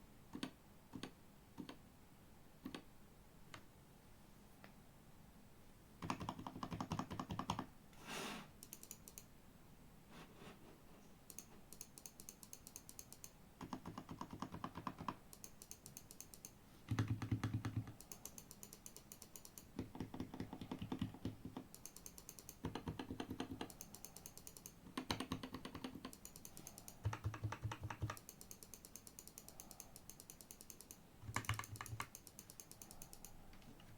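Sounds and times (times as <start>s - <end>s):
mechanical keyboard typing: 6.0s - 7.7s, 8.6s - 9.3s, 11.3s - 33.4s.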